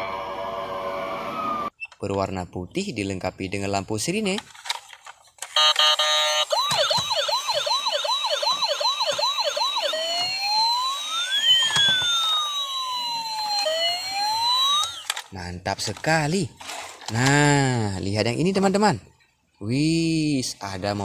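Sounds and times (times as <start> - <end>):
toy police siren: 5.6 - 15.3.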